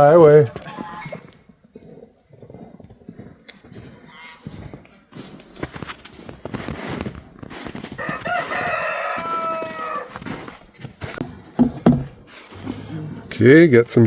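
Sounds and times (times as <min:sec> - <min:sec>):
rooster crowing: 0:07.9 - 0:10.4
rustling and clattering: 0:10.1 - 0:12.9.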